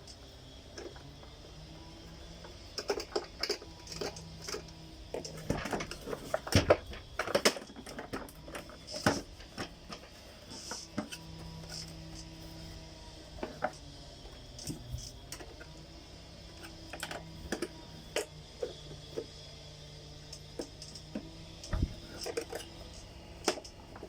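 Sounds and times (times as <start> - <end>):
plastic parts clicking and knocking: 2.4 - 12.0, 13.4 - 13.8, 16.6 - 19.4, 20.3 - 24.0.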